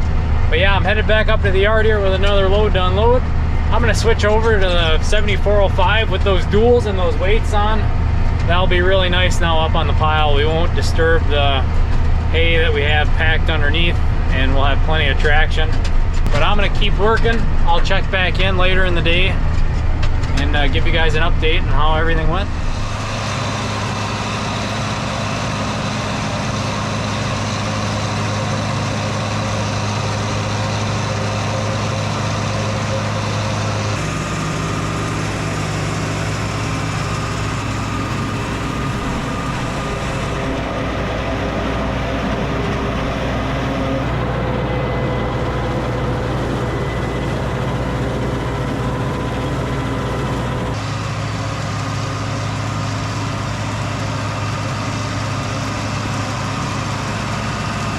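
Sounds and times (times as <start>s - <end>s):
tractor engines running: 0.0s - 57.9s.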